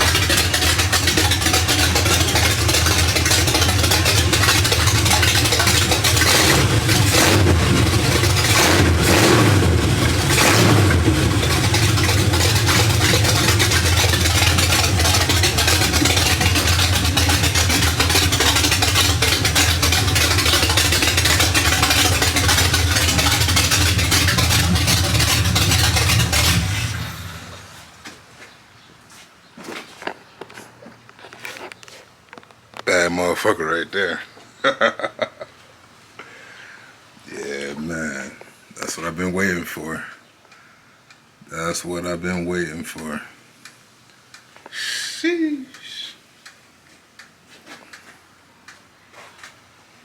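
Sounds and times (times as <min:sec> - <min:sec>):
truck engine revving and idling: 0:00.0 - 0:28.2.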